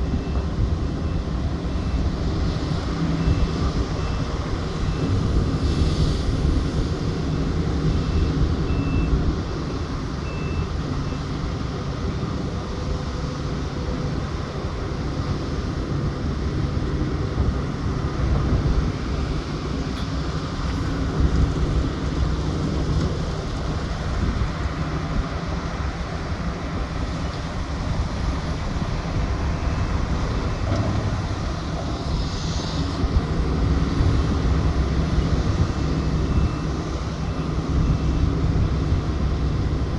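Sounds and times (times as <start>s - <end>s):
diesel engines rumbling: 0.0s - 39.9s.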